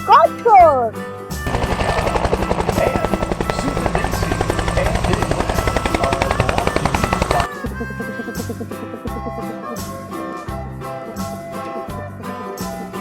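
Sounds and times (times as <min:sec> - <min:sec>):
helicopter rotor chopping: 0:01.4 - 0:07.6.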